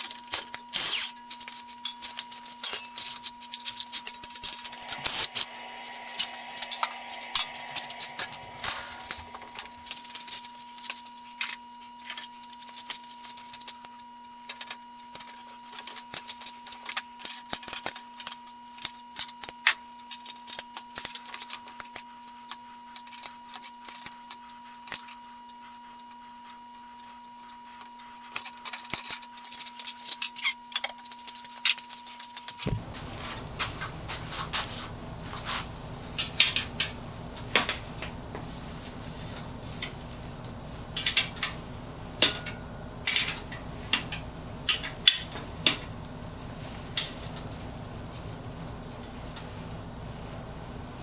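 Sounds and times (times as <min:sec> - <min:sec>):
low hum: 0:04.3 - 0:10.7
faint high tone: 0:04.5 - 0:10.4.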